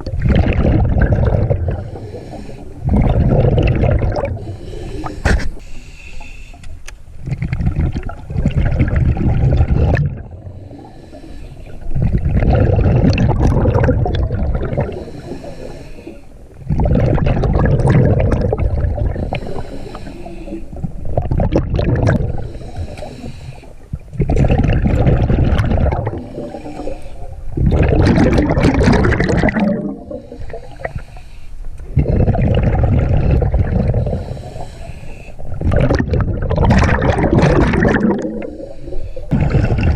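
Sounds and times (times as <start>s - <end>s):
rumbling bursts of exhaled bubbles: 0.0s - 5.3s, 7.2s - 11.0s, 11.7s - 15.8s, 16.4s - 20.0s, 20.6s - 31.0s, 31.8s - 39.9s
diver breathing through regulator: 1.5s - 3.2s, 4.1s - 6.8s, 9.8s - 12.0s, 14.7s - 16.5s, 19.0s - 21.0s, 22.2s - 23.9s, 26.0s - 27.5s, 29.8s - 32.6s, 33.2s - 35.6s, 37.9s - 39.9s.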